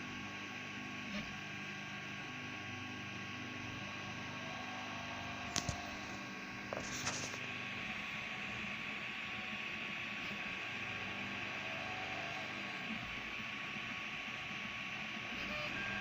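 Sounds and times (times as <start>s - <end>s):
cooling fans hissing: 0.0s - 16.0s.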